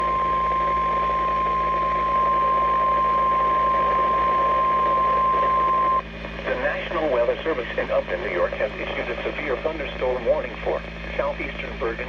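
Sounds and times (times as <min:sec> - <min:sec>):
radio background hiss: 0:03.6 - 0:12.0.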